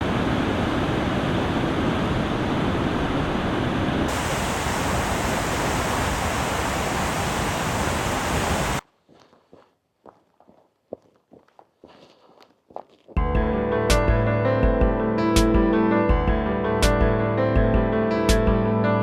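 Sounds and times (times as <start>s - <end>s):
waterfall rushing: 0.0s - 8.8s.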